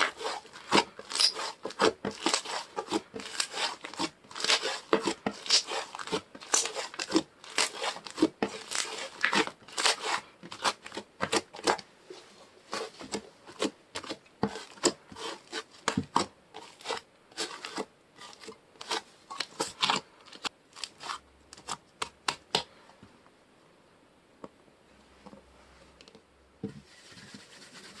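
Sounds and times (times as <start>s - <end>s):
slime crackling and squishing: 0.0s - 11.8s.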